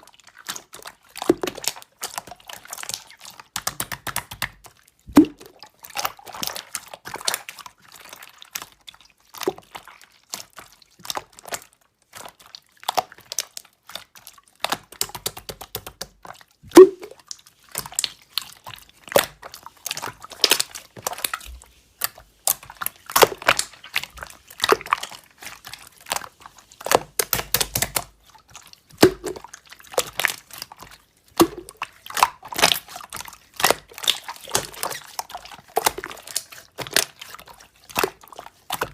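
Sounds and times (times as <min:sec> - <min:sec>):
slime squeezed by hand: 0:04.6 - 0:08.8, 0:16.6 - 0:38.9.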